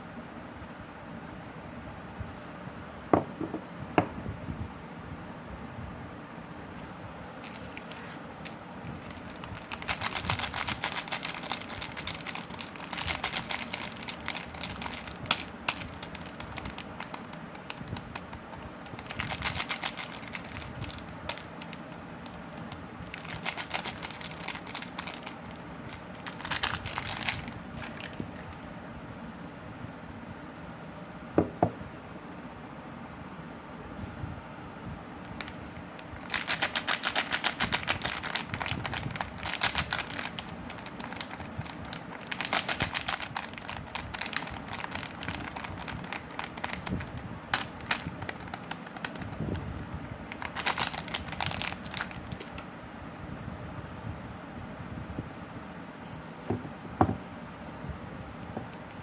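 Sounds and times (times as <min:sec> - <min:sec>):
packaging crinkling: 0:07.4 - 0:28.6, 0:35.3 - 0:52.6.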